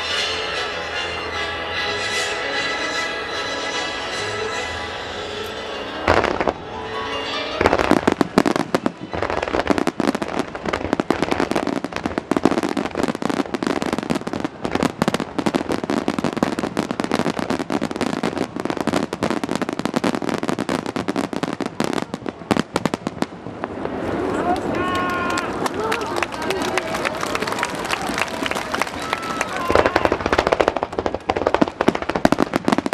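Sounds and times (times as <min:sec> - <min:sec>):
music playing: 0:00.0 - 0:10.0
firework burst: 0:05.8 - 0:24.8, 0:27.2 - 0:32.9
crackle of rapid pops: 0:29.6 - 0:32.9.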